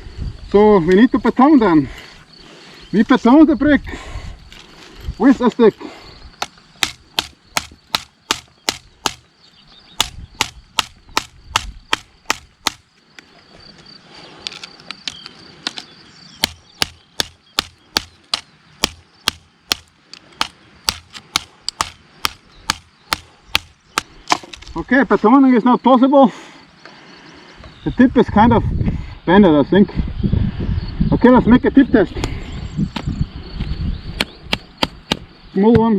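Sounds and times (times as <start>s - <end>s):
wooden stick knocking knife spine: 6.4s - 9.3s, 16.4s - 24.7s.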